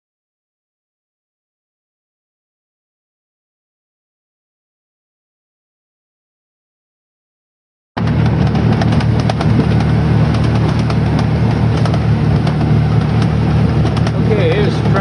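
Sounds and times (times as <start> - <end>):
boat engine drone: 8.0 - 15.0
waves slapping metal hull: 8.0 - 15.0.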